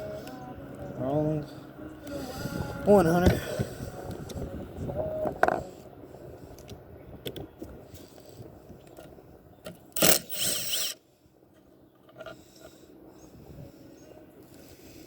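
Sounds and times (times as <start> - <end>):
loud scraping and rattling: 10.0 - 11.0.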